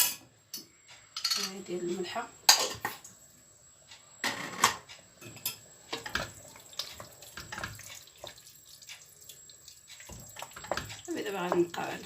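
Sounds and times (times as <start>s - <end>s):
utensils clinking against pots and dishes: 0.0s - 1.7s, 2.5s - 3.0s, 4.2s - 8.0s.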